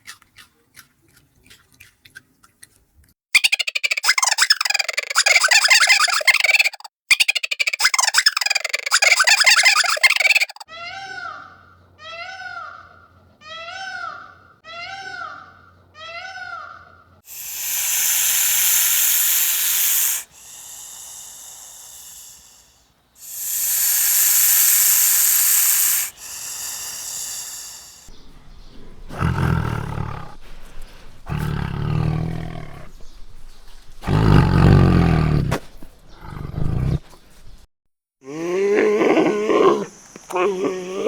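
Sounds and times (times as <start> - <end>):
cat hissing: 17.3 - 28.1, 29.1 - 33.0, 34.0 - 35.6
big cat growling and roaring: 28.3 - 33.4, 34.0 - 37.3.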